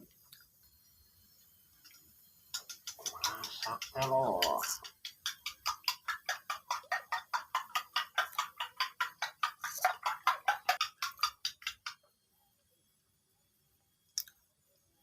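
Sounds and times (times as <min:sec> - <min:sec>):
rapid knocking strokes: 0:02.6 - 0:12.0.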